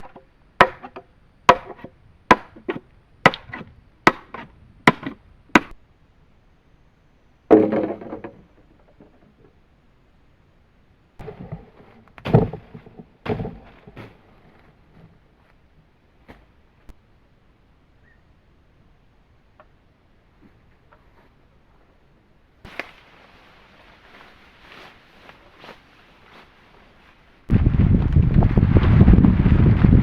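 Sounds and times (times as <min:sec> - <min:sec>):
blade chopping wood: 0:00.0 - 0:05.8, 0:07.5 - 0:08.4, 0:11.2 - 0:14.3
crunching rustle: 0:22.6 - 0:27.6.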